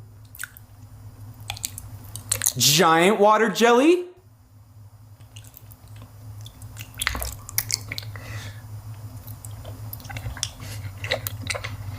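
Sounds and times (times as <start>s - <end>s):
wet chewing with crackly clicks: 0.2s - 0.7s, 1.4s - 2.6s, 5.2s - 8.2s, 8.9s - 11.9s.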